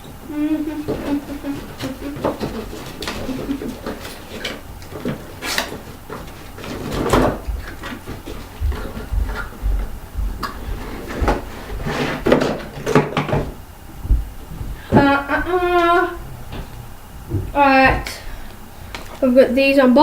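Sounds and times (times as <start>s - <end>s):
packaging scrapes and rustles: 0.5s - 9.6s, 10.6s - 13.6s.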